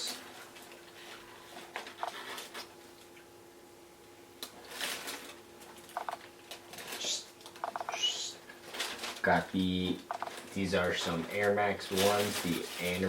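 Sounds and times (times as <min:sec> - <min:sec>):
packaging rustling: 0:08.5 - 0:13.0.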